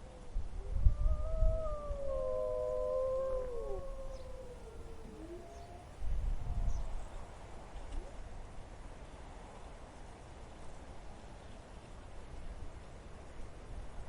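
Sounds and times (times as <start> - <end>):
low wind rumble: 0.1 - 7.7
wolves howling: 0.9 - 7.2.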